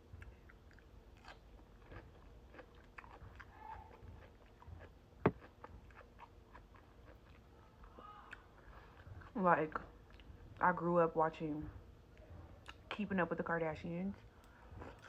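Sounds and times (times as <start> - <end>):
chewing crunches: 0.1 - 9.4.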